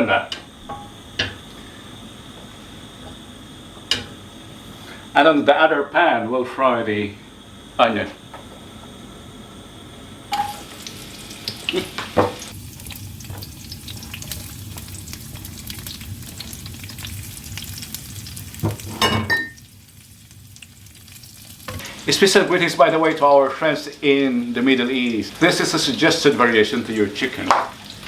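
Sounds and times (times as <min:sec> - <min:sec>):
onions sizzling in oil: 0:10.3 - 0:28.0.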